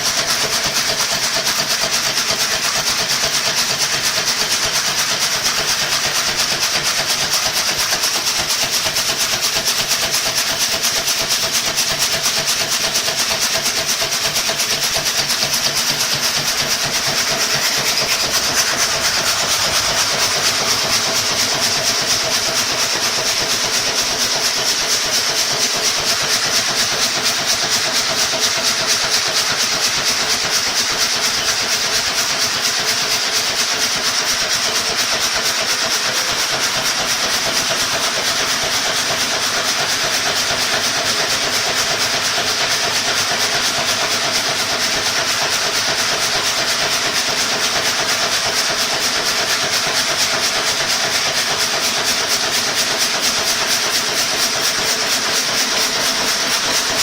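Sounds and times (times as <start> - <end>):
conveyor machinery hissing: 0.0 - 57.0
machinery hum: 16.4 - 24.3.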